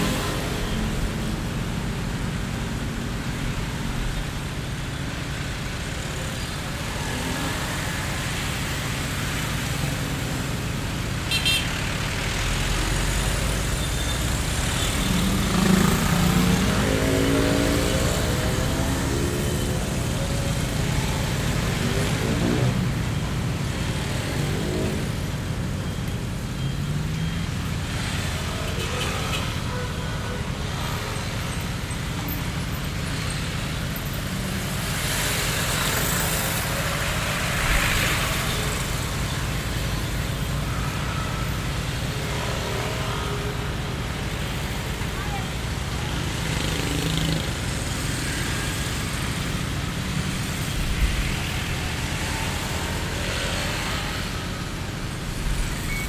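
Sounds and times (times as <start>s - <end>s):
road traffic: 0.0s - 56.0s
vehicle engine revving: 11.9s - 25.5s.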